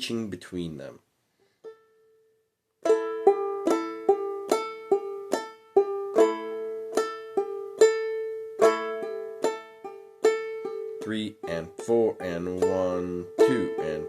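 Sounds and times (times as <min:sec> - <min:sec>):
clawhammer picking on ukulele: 0:02.8 - 0:14.0.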